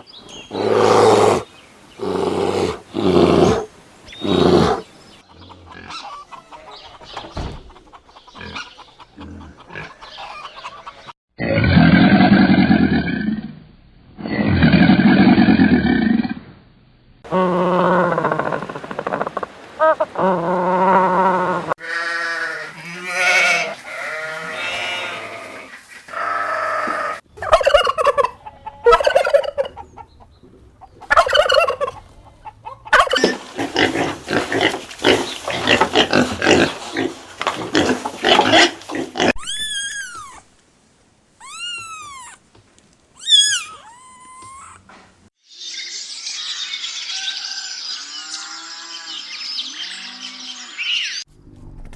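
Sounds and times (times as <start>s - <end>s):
farm animal calls: 0.0s - 7.0s, 17.3s - 40.4s
high bird chirps: 45.5s - 51.3s.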